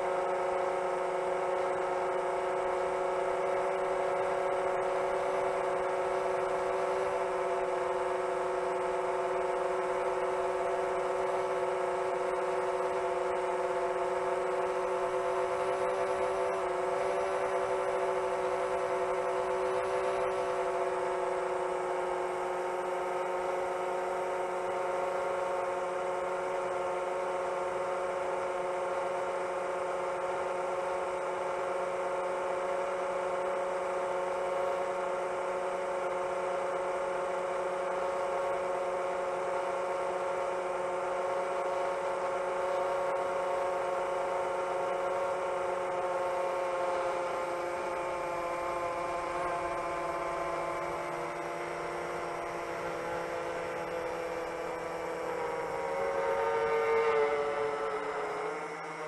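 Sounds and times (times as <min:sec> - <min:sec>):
quadcopter motors whirring: 0:00.0 - 0:59.0.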